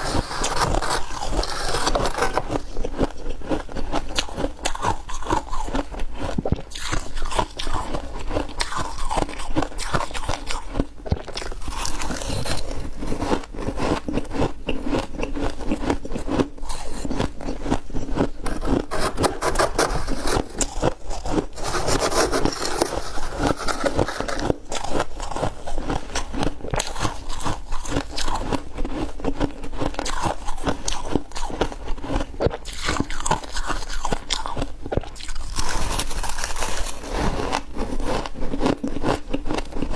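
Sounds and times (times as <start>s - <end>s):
spoon scraping ice: 0.0s - 3.1s, 11.4s - 14.3s, 15.1s - 29.1s, 35.3s - 39.9s
crunching ice: 0.0s - 39.9s.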